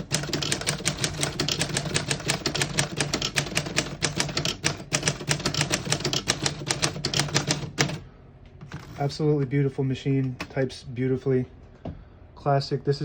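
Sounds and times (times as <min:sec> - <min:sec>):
manual typewriter typing: 0:00.0 - 0:08.0.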